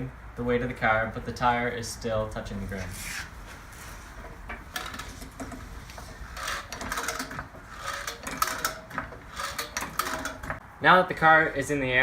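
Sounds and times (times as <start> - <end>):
car jack clicking and rattling: 4.2 - 10.6.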